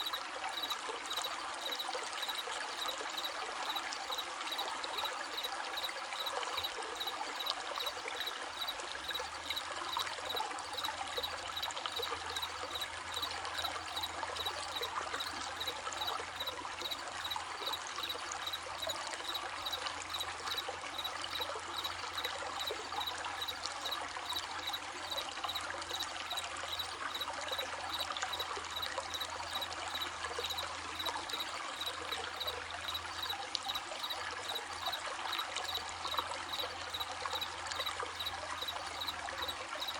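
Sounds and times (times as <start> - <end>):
crickets chirping: 0.0 - 39.9
stream trickling: 0.0 - 39.9.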